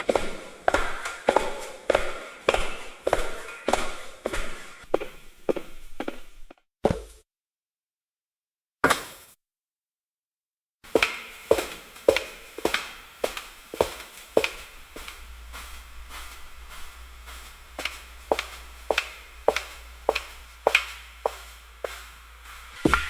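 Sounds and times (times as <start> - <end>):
hard-soled footsteps in hallway: 0.0 - 7.2, 10.9 - 23.0
low steady hum: 14.6 - 23.0.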